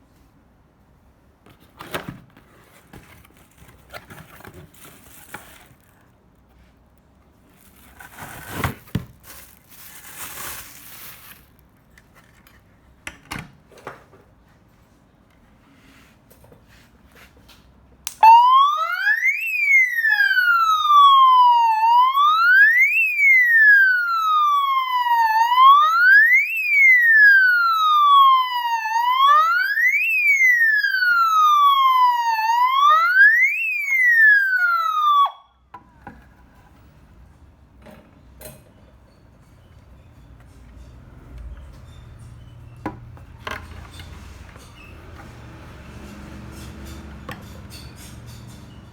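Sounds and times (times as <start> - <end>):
alarm siren wailing: 18.1 - 35.6.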